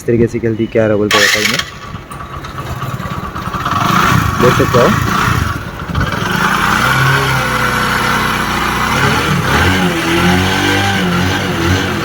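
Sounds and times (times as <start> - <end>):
motorcycle engine idling and revving: 1.0 - 12.0.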